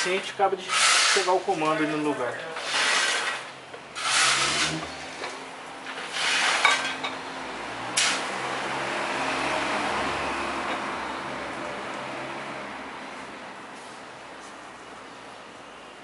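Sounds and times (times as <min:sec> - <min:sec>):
metal rasp: 0:00.7 - 0:01.4, 0:02.6 - 0:03.4, 0:04.0 - 0:05.1, 0:06.0 - 0:06.8
metal scraping and clinking: 0:02.6 - 0:07.2.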